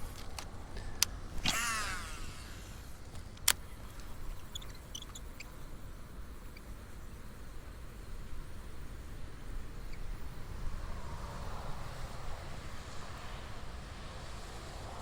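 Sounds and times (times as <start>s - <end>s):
sharp click: 0.0s - 5.3s
fishing line whizzing off reel: 0.0s - 5.5s
faint high chirps: 3.7s - 5.6s.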